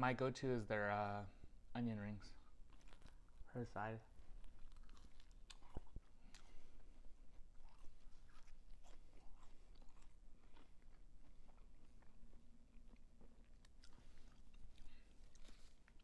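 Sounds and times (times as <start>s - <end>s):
chewing crunchy food: 2.2s - 16.0s.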